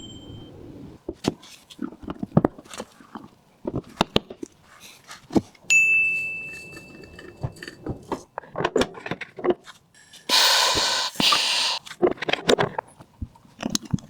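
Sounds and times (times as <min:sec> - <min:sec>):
loud hiss: 0:10.3 - 0:11.8.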